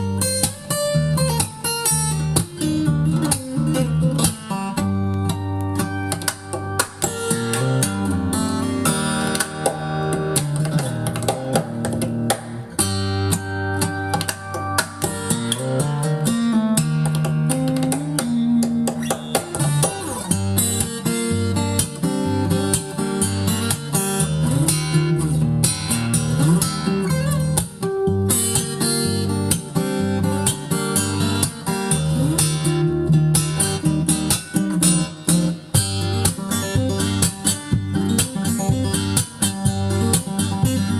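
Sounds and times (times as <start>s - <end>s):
guitar music from vinyl record: 0.0s - 40.9s.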